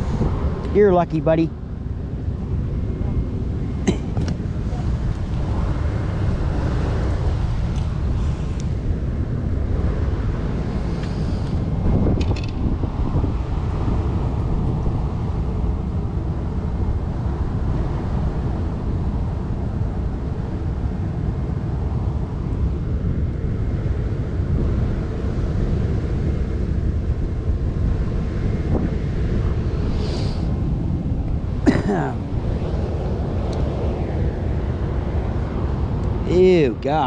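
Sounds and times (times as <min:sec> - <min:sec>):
wind buffeting microphone: 0:00.0 - 0:37.0.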